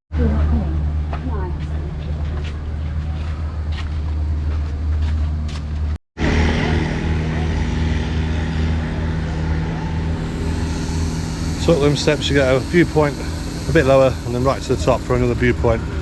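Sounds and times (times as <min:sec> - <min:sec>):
engine drone: 0:00.2 - 0:16.0.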